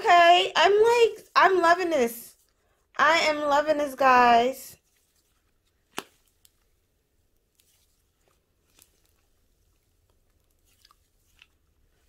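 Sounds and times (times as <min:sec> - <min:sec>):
slime squishing and crackling: 0:07.4 - 0:12.0.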